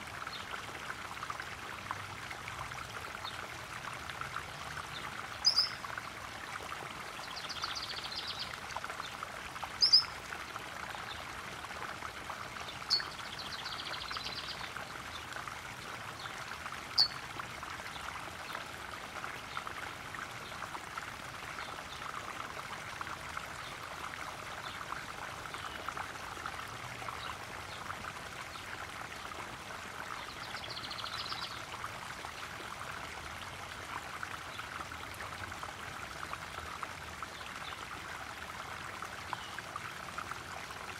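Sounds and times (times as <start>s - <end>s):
pond waterfall splashing: 0.0s - 40.9s
bird chirps: 5.4s - 5.8s, 9.8s - 10.1s.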